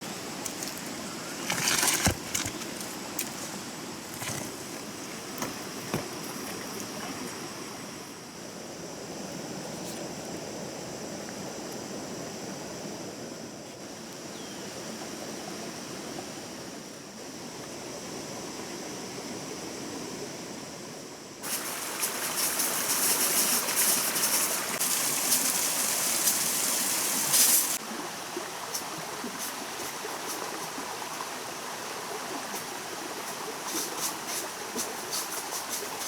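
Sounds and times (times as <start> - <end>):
stream water flowing: 0.0 - 8.2, 21.4 - 36.0
rustling: 0.5 - 4.8.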